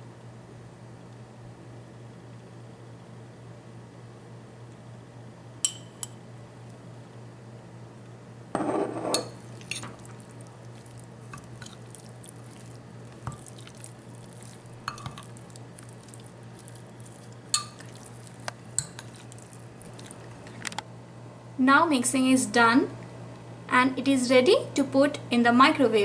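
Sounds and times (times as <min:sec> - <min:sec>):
food mixed in a bowl: 0:08.6 - 0:20.8.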